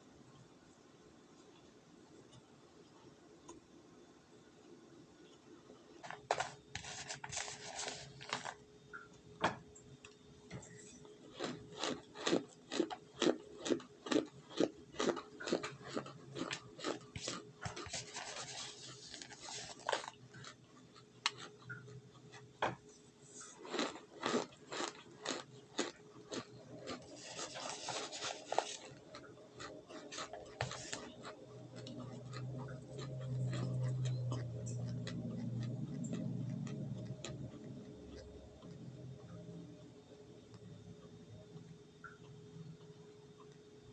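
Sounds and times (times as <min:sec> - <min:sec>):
crisp crunching: 0:06.0 - 0:08.6, 0:11.2 - 0:21.6, 0:23.4 - 0:37.5.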